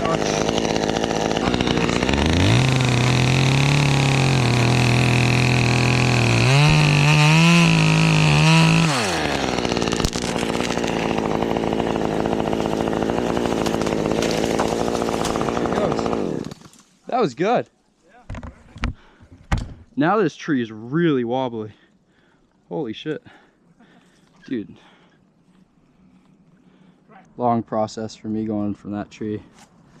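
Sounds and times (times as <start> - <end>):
chainsaw cutting wood: 0.0 - 16.9.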